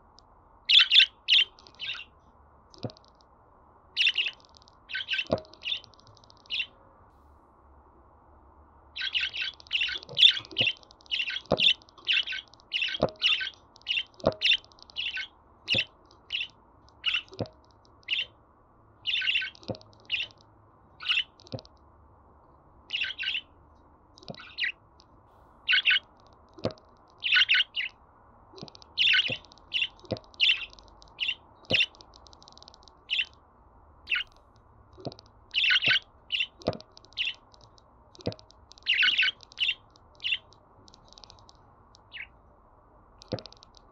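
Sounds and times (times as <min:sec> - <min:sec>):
budgerigar chirping: 0:00.7 - 0:02.1, 0:04.0 - 0:06.7, 0:09.0 - 0:17.4, 0:18.0 - 0:18.3, 0:19.0 - 0:20.4, 0:21.0 - 0:21.4, 0:22.9 - 0:23.5, 0:24.3 - 0:24.8, 0:25.7 - 0:26.1, 0:27.2 - 0:28.0, 0:29.0 - 0:32.0, 0:33.1 - 0:33.3, 0:34.1 - 0:34.4, 0:35.5 - 0:37.4, 0:38.8 - 0:40.5, 0:42.1 - 0:42.3.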